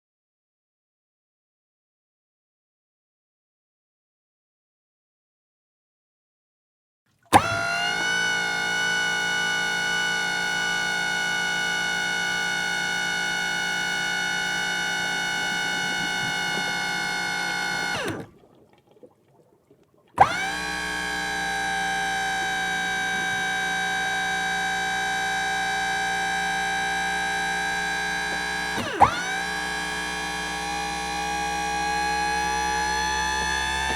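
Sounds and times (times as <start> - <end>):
motor starting click: 7.3 - 18.4, 20.2 - 33.9
pump motor whine: 7.3 - 18.4, 20.2 - 33.9.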